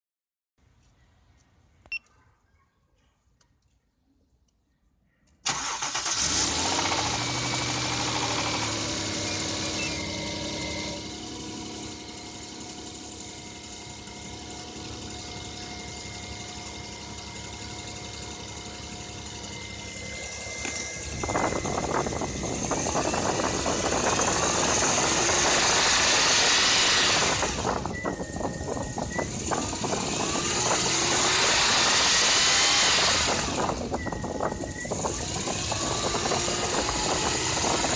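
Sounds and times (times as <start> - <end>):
car engine starting and idling: 5.4 - 37.9
engine revving: 5.5 - 37.9.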